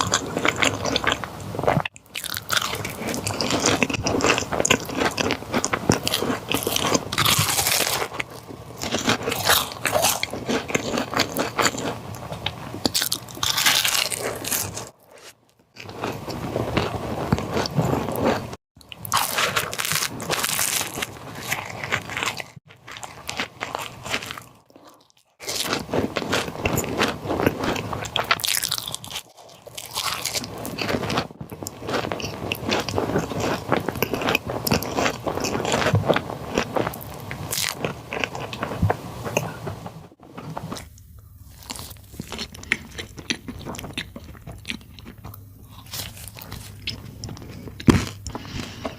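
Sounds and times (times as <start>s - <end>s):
wet chewing: 0.0s - 39.9s, 41.6s - 48.9s
crunchy bites into pastry: 1.8s - 11.9s, 12.8s - 15.9s.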